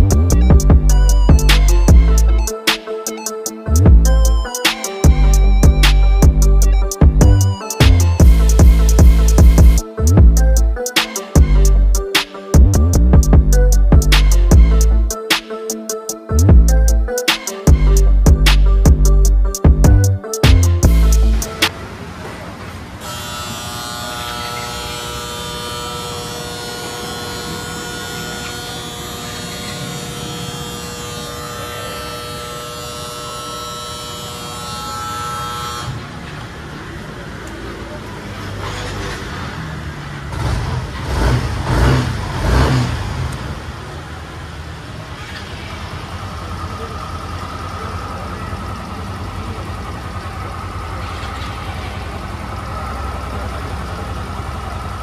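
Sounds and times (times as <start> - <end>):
high whine: 0.0 - 21.9
motor buzzing hum: 23.0 - 35.9
scooter engine running: 45.8 - 55.0.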